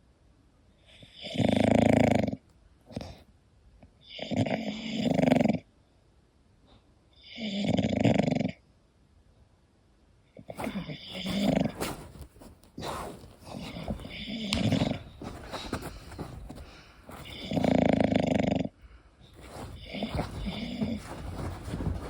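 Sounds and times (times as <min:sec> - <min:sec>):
dog snoring: 0:01.0 - 0:03.2, 0:04.1 - 0:05.7, 0:07.2 - 0:08.6, 0:10.5 - 0:22.0.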